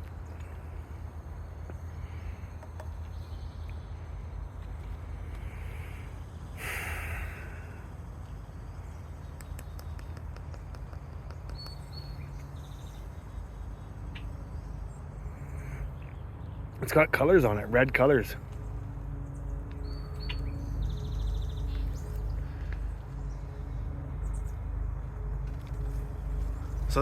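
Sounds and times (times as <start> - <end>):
low outdoor rumble: 0.0 - 27.0
faint light clicks: 9.2 - 12.5.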